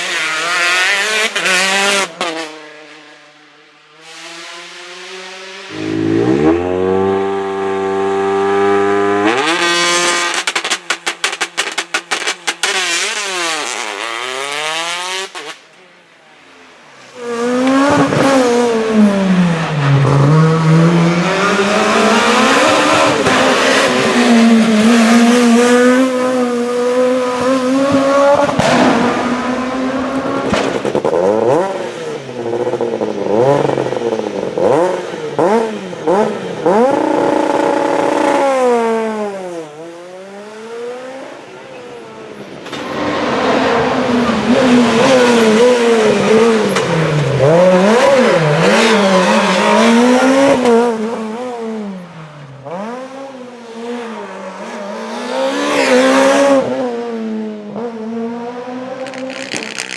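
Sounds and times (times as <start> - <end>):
rally car engine revving: 0.0 - 3.2, 4.0 - 15.6, 17.1 - 41.6, 42.6 - 59.9
exhaust crackling: 59.0 - 59.9.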